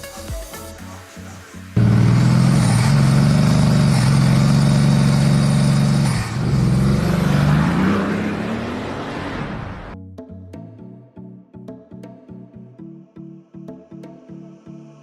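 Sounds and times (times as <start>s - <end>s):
engine running at high revs: 1.8s - 10.0s.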